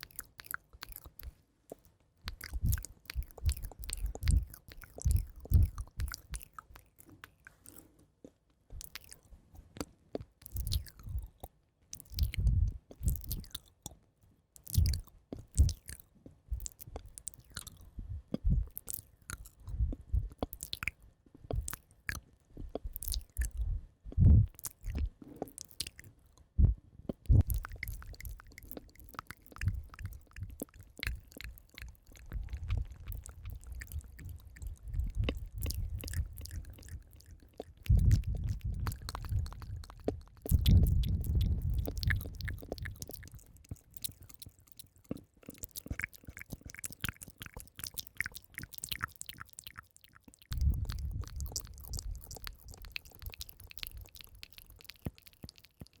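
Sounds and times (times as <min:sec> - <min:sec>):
soft low thumps: 0:12.3 - 0:13.2, 0:17.9 - 0:18.8, 0:19.6 - 0:20.5, 0:22.6 - 0:25.1, 0:26.5 - 0:28.0, 0:29.6 - 0:31.2, 0:32.2 - 0:37.0, 0:37.8 - 0:42.9, 0:50.5 - 0:52.4.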